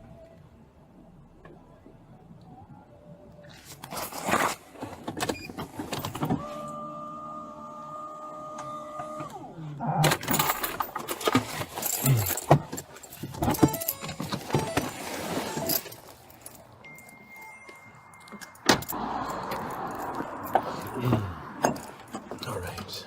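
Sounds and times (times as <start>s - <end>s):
rustling and clicking handling: 10.1s - 20.9s.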